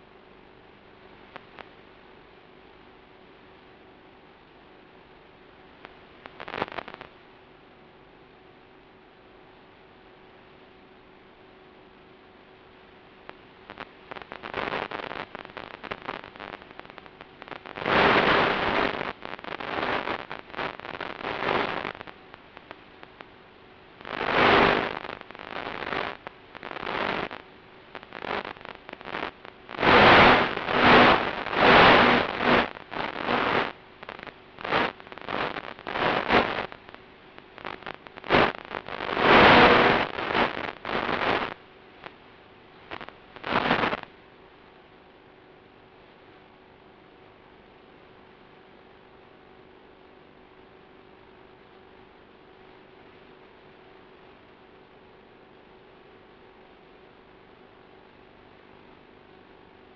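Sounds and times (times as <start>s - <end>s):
faint hum: 0.0s - 59.9s
steady hiss: 5.8s - 7.2s, 13.4s - 23.3s, 23.9s - 42.2s, 42.8s - 44.1s.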